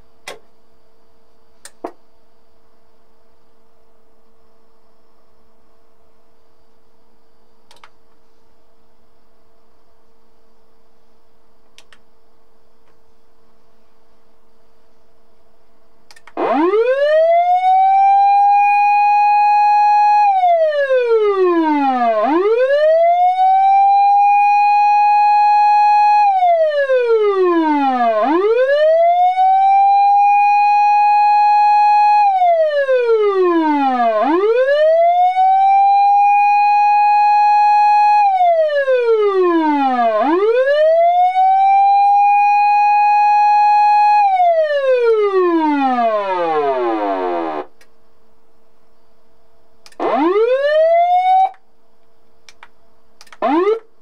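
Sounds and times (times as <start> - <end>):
electronic siren wailing: 16.3 - 47.7, 49.9 - 51.6, 53.3 - 53.9.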